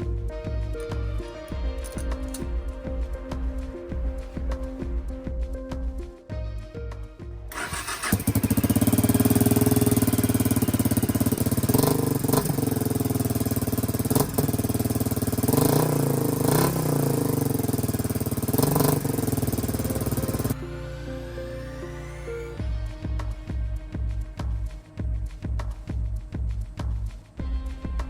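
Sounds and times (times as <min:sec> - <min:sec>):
music: 0:00.0 - 0:28.0
motorcycle engine revving: 0:07.5 - 0:24.7.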